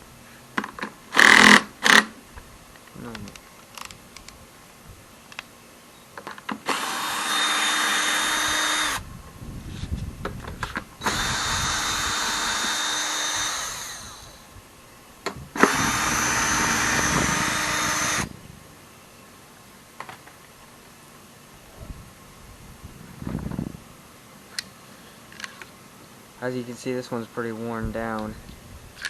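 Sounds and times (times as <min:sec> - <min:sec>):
power drill removing bolts: 0:01.1 - 0:02.1, 0:06.4 - 0:09.0, 0:10.6 - 0:14.4, 0:15.6 - 0:18.3.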